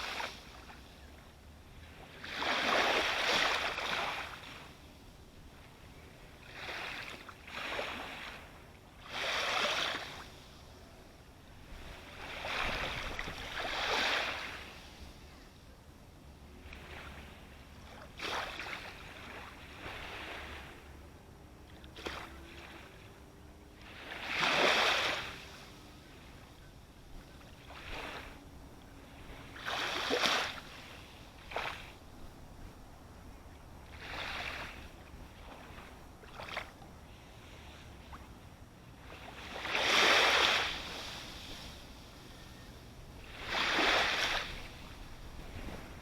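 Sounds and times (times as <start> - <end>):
sea waves breaking: 1.6 - 15.2, 16.5 - 21.0, 21.7 - 46.0.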